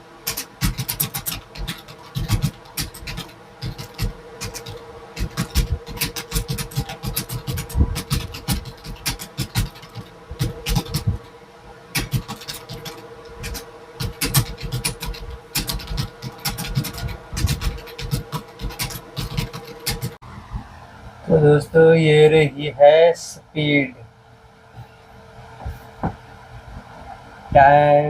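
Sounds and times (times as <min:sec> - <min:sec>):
steady hum: 0:00.0 - 0:28.0
computer keyboard typing: 0:00.2 - 0:11.3, 0:12.0 - 0:20.2.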